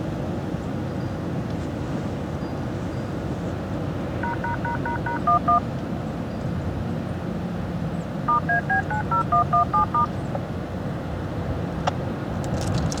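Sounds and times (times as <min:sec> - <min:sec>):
touch-tone beeps: 0:04.2 - 0:05.6, 0:08.3 - 0:10.1.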